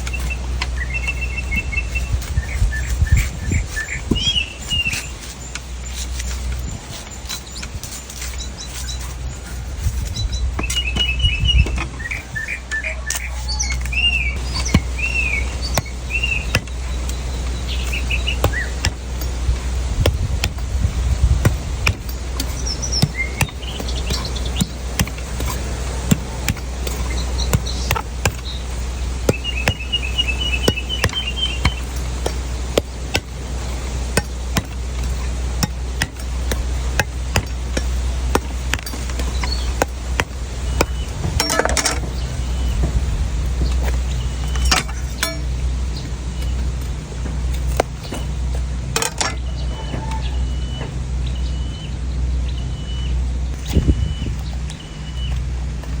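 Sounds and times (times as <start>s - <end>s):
birds chirping: 0.0s - 56.0s
steady low hum: 0.0s - 56.0s
knife chopping coconut: 21.4s - 28.6s.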